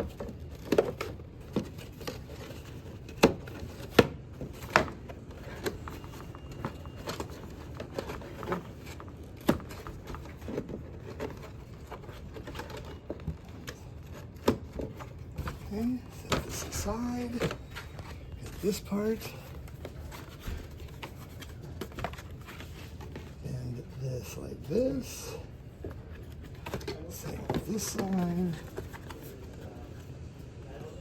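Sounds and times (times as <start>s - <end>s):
paperboard folding clicks and taps: 0.0s - 18.6s.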